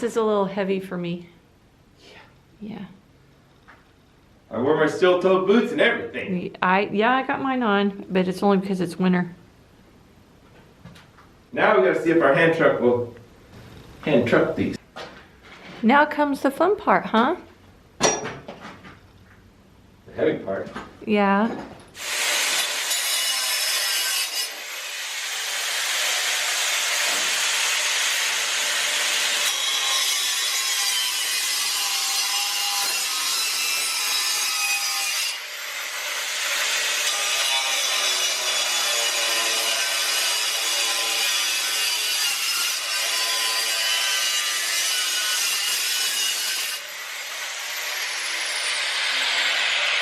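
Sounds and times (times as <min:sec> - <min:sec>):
saw cutting through metal: 0:22.0 - 0:50.0.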